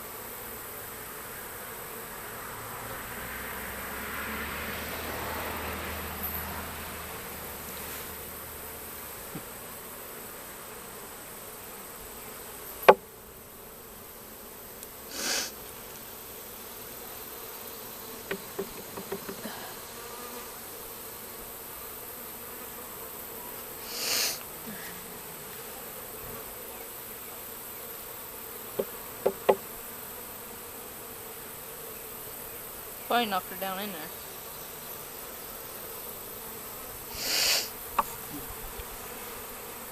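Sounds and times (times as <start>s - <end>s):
bees buzzing: 0.0s - 39.9s
sharp knocks: 18.3s - 19.5s, 28.8s - 29.7s.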